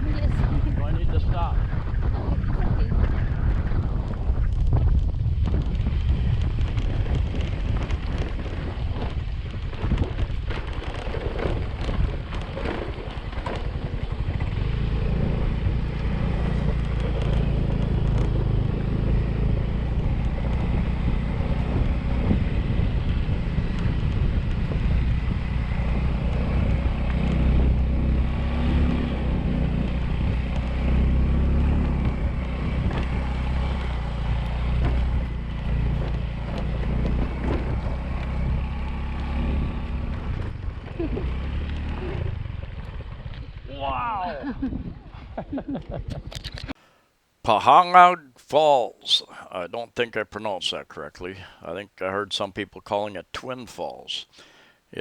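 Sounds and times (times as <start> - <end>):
wind buffeting microphone: 0.0 - 25.8
motorbike engine running: 0.0 - 43.3.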